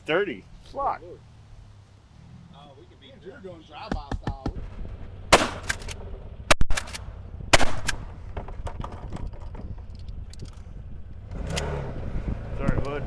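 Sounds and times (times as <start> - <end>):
vehicle engine running: 4.6 - 13.0
shotgun shots: 5.3 - 8.2.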